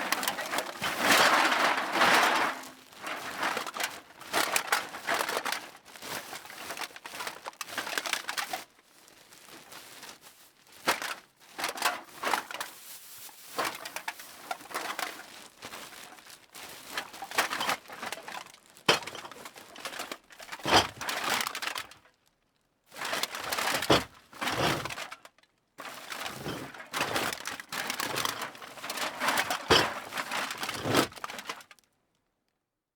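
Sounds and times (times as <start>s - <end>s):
bag crinkling: 0.1s - 21.7s, 23.0s - 25.1s, 25.8s - 31.7s
cans clattering together: 18.9s - 19.4s, 20.6s - 21.1s, 23.3s - 25.1s, 26.2s - 31.3s.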